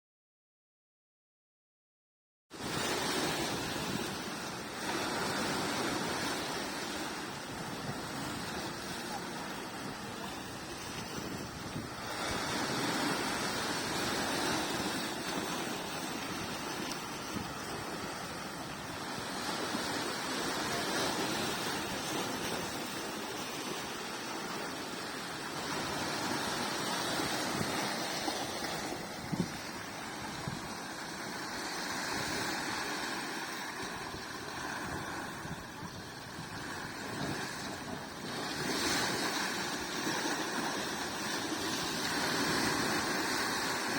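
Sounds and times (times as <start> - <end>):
sea waves breaking on shore: 2.5 - 43.9.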